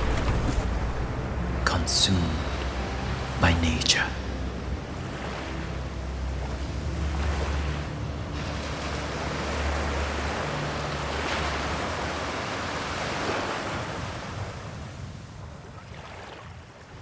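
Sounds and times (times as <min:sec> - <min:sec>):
low rumble: 0:00.0 - 0:03.5
ocean surf washing: 0:00.0 - 0:15.4.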